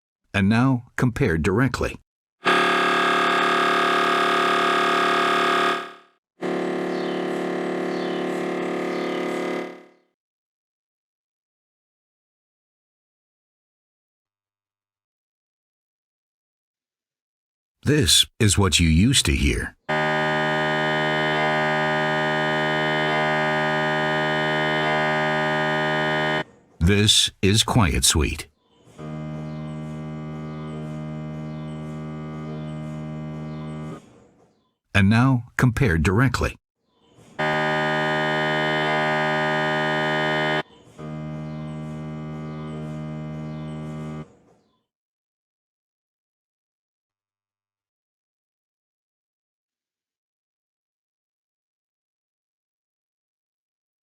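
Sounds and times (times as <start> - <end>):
mri scanner loud buzzing: 2.4 - 9.9, 19.9 - 26.4, 37.4 - 44.3.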